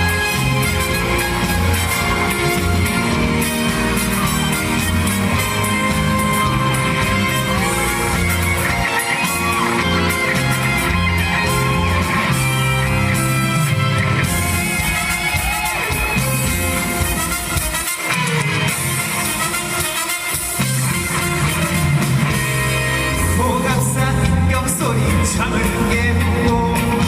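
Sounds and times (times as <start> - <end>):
pulsing bass line: 0.0 - 17.0
trot song with electric guitar: 0.0 - 27.0.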